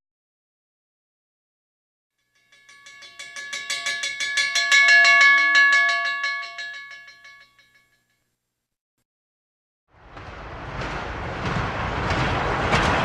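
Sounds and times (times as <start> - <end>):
bell struck rapidly: 2.2 - 8.1.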